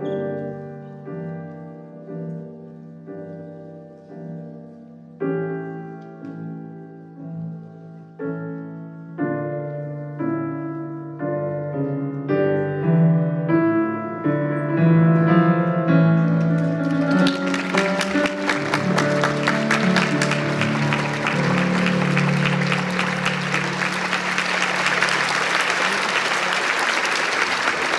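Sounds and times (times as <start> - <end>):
piano chords: 0.0 - 27.9
audience applause: 16.4 - 27.9.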